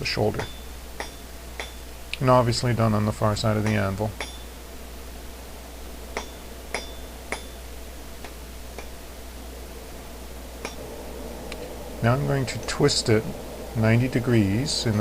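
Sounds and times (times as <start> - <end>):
hammer striking hot steel on anvil: 0.4 - 1.9, 3.6 - 4.6, 6.2 - 9.0, 10.6 - 10.8.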